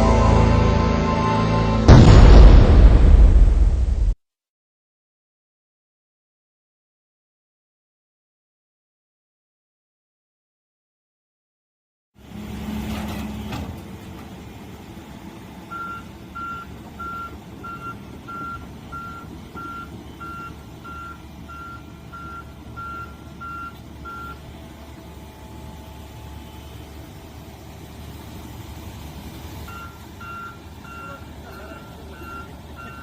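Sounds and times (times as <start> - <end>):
heavy construction machinery running: 12.2 - 33.0
high-pitched warning alarm beeps: 29.7 - 33.0.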